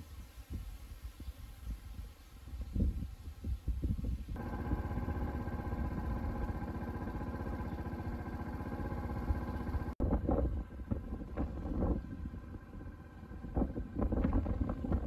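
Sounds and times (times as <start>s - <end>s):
wind noise on microphone: 0.0s - 6.6s, 8.9s - 15.0s
motorcycle engine running: 4.4s - 15.0s.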